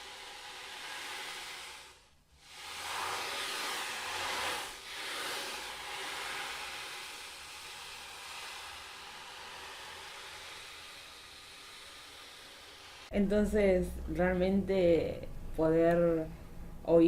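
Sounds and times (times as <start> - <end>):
ocean drum beads rolling: 2.6 - 13.1.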